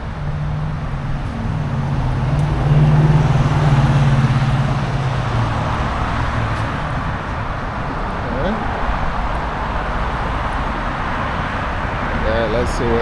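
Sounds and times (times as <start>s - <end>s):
street traffic noise: 0.0s - 13.0s
vehicle engine hum passing: 0.0s - 13.0s.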